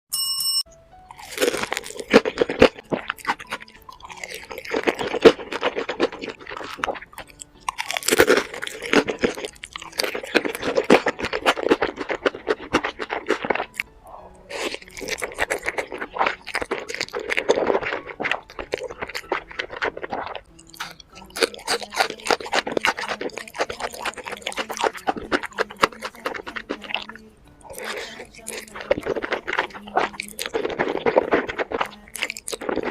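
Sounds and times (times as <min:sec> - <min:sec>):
chewing and crunching: 0:01.1 - 0:32.9.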